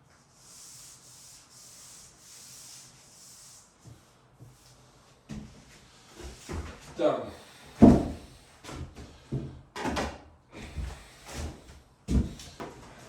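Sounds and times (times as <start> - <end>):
rubbing strokes on wallpaper: 0.0 - 6.5.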